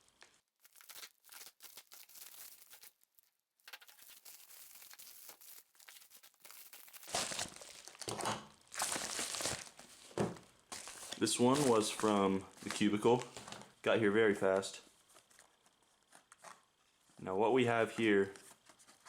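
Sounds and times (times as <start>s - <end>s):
wrapping being torn open: 0.0s - 10.0s, 10.7s - 13.6s
package wrapping crinkling: 0.0s - 13.8s, 14.5s - 17.1s.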